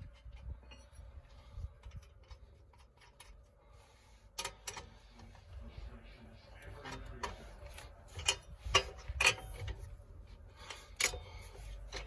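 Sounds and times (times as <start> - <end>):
wheel spanner clicks: 4.4 - 5.0, 10.6 - 12.0.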